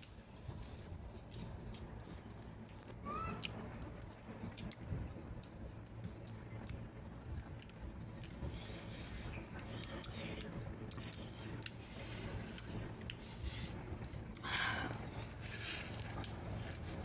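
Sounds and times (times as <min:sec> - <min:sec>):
steady low hum: 0:00.0 - 0:17.0
person chewing and eating: 0:03.4 - 0:17.0.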